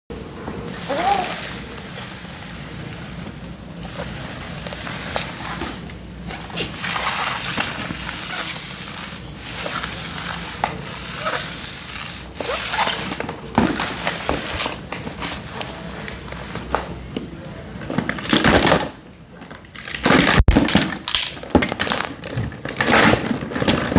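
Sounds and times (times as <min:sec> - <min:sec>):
plastic toys rustling: 0:00.2 - 0:17.1, 0:17.7 - 0:23.9
plastic toys clicking: 0:00.8 - 0:01.9.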